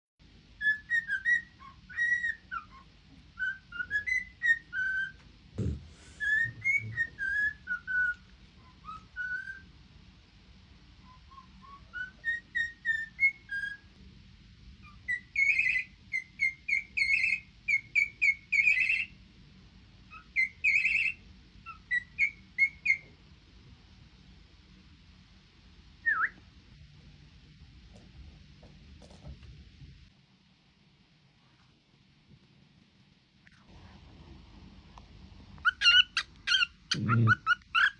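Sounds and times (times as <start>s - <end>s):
cockatiel whistling: 0.6s - 9.7s, 11.0s - 13.9s, 14.8s - 19.2s, 20.1s - 23.1s, 26.0s - 26.4s, 35.6s - 37.9s.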